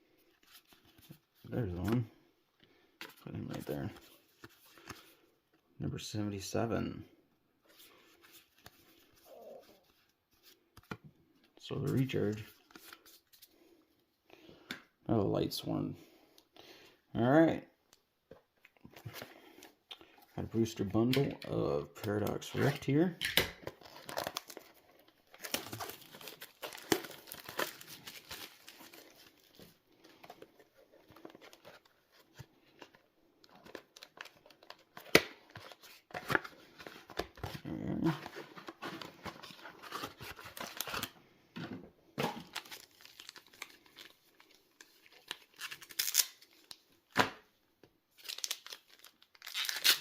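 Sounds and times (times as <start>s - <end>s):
plastic wrap crinkling and tearing: 23.7s - 29.7s, 37.3s - 41.2s, 42.4s - 46.8s, 48.1s - 50.0s
packaging rustling: 23.7s - 41.2s, 42.3s - 46.8s, 48.2s - 50.0s.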